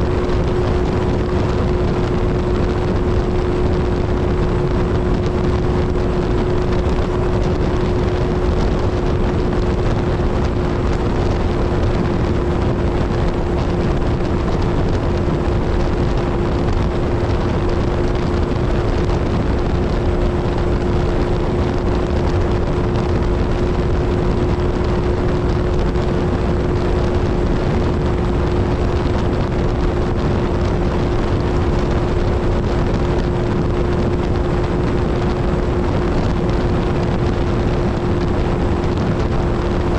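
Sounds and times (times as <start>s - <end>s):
motorcycle engine cruising: 0.0s - 39.9s
wind and road noise: 0.0s - 39.9s.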